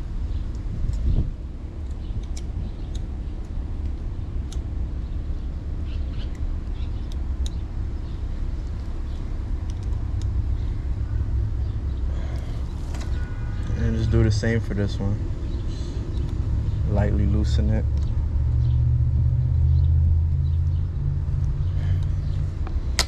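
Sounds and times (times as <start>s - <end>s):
low rumble: 7.3s - 23.0s.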